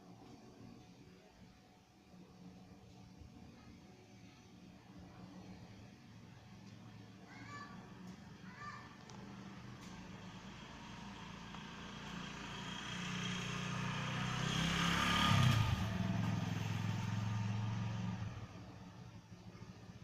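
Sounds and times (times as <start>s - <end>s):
vehicle engine passing by: 9.4s - 19.1s.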